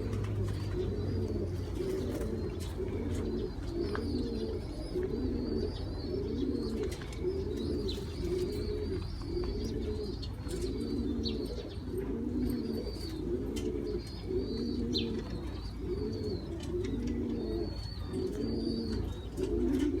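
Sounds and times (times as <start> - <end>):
pigeons cooing: 0.0 - 20.0
small birds chirping: 0.0 - 20.0.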